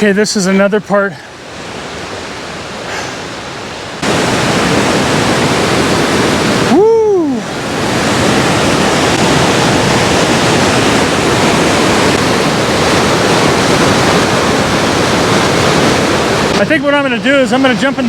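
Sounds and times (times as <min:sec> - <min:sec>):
fast river water rushing: 0:00.0 - 0:18.0
man shouting woo: 0:06.7 - 0:07.5.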